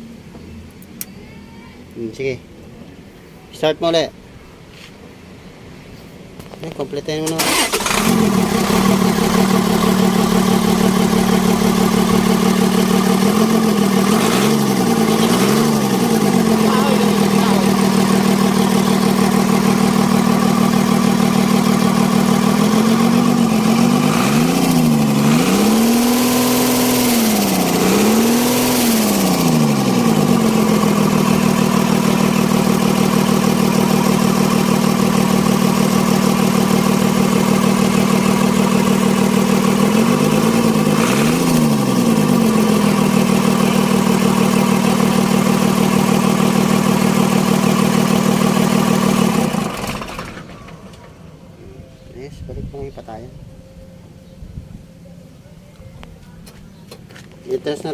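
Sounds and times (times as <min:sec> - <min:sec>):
diesel engine running and revving: 0:07.4 - 0:51.2.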